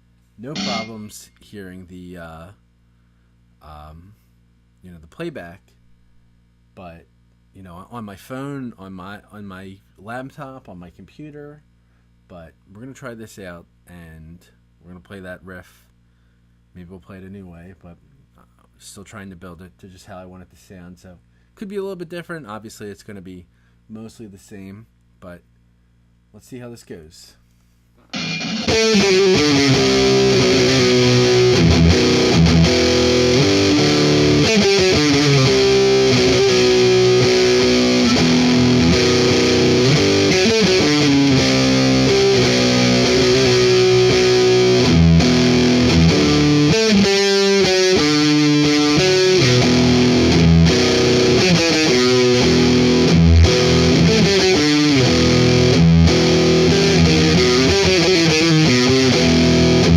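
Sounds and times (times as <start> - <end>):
distorted electric guitar riff: 0.4 - 1.1, 28.1 - 59.9.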